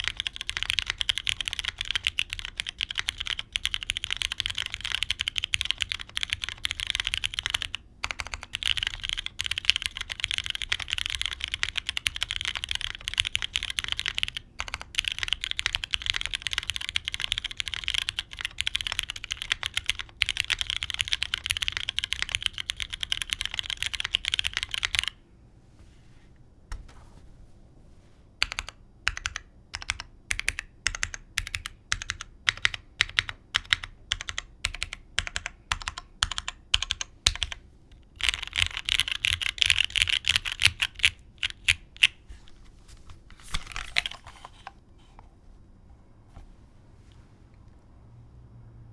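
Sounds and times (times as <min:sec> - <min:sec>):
typing on mechanical keyboard: 0:00.0 - 0:25.2, 0:28.4 - 0:42.2.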